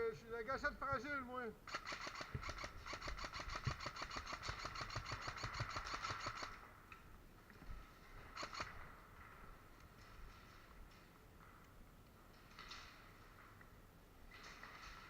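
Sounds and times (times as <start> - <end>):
airsoft gun firing: 1.7 - 6.6, 8.3 - 8.9.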